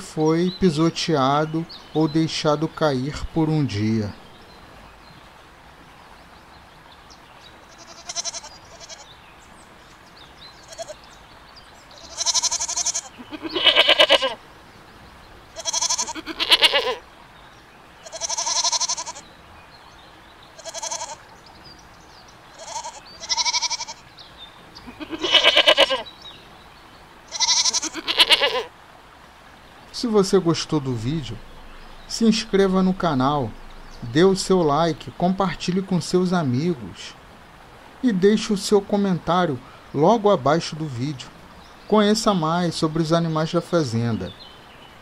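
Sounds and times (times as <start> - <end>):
goats bleating: 7.7 - 9.1, 10.6 - 11.0, 11.9 - 14.4, 15.5 - 17.0, 18.0 - 19.3, 20.6 - 21.2, 22.5 - 24.0, 24.8 - 26.1, 27.3 - 28.7.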